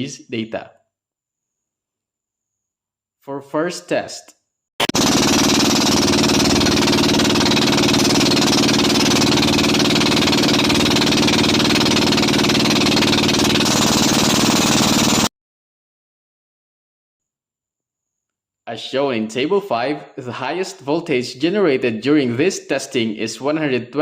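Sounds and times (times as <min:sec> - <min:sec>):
boat engine running: 0:04.8 - 0:15.3.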